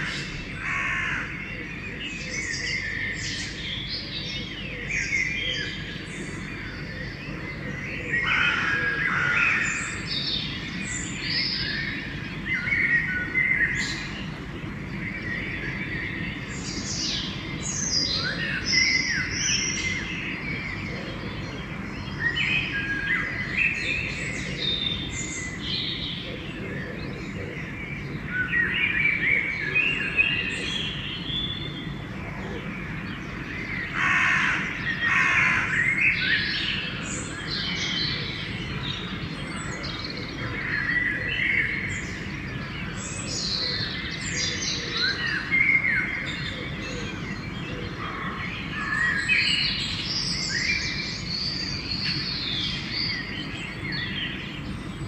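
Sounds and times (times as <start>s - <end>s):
crow cawing: 0.0s - 1.4s, 34.0s - 35.8s
songbirds singing: 0.0s - 55.0s.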